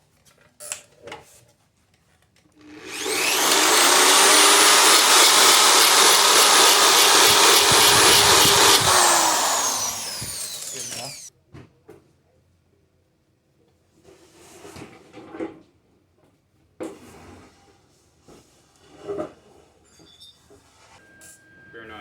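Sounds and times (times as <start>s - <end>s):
power tool whining: 2.6s - 11.3s.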